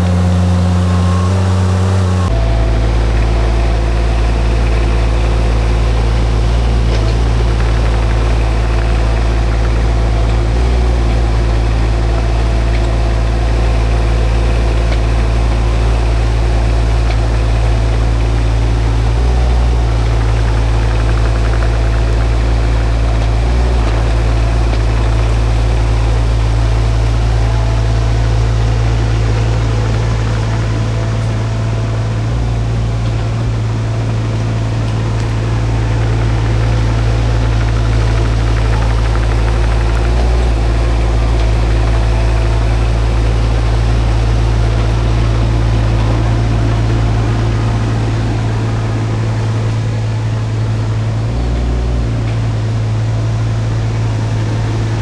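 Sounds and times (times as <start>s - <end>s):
excavator diesel engine running: 0.0s - 55.0s.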